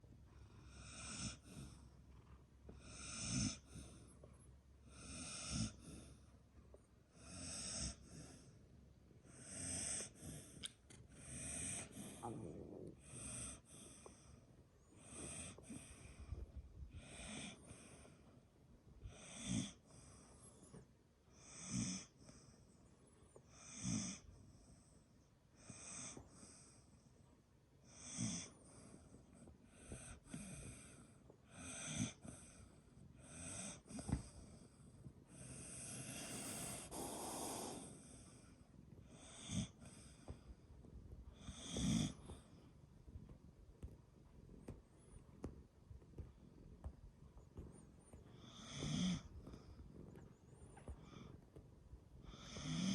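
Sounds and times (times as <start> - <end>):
dog snoring: 0.4 - 4.2, 4.8 - 6.3, 7.1 - 8.6, 9.2 - 18.2, 19.0 - 20.8, 21.4 - 22.6, 23.5 - 24.9, 27.8 - 40.5, 41.3 - 42.7, 47.6 - 51.4, 52.2 - 52.9.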